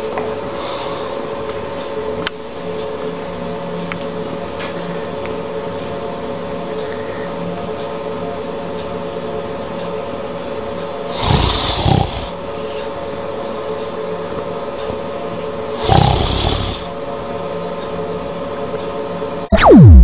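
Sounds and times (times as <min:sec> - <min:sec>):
cat snoring: 0:00.5 - 0:01.3, 0:11.1 - 0:12.4, 0:15.8 - 0:17.0.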